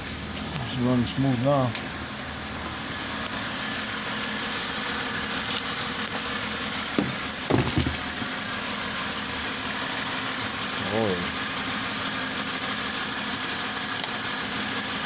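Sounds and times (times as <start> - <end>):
car engine idling: 0.1 - 15.0.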